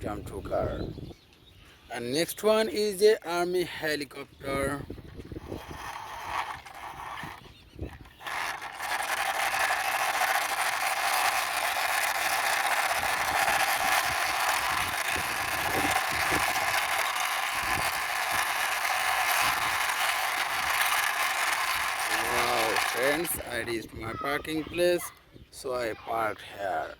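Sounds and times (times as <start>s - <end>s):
toy helicopter rolling on floor: 4.5s - 25.1s.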